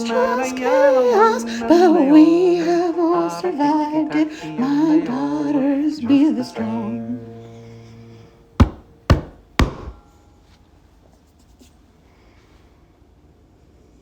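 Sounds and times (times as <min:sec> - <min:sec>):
sharp knocks: 0:08.6 - 0:10.0.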